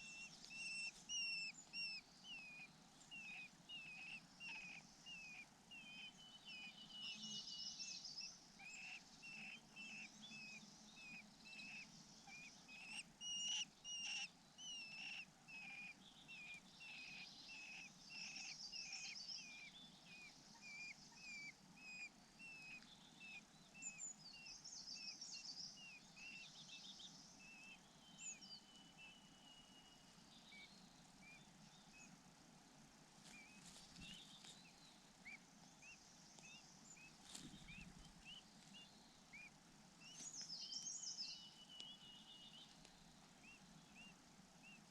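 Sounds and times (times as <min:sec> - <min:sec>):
high bird twittering: 0:00.0 - 0:07.4.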